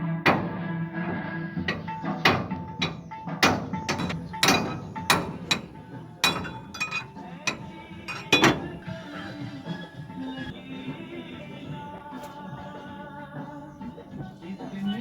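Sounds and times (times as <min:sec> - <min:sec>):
hammer striking metal: 0:01.7 - 0:09.1.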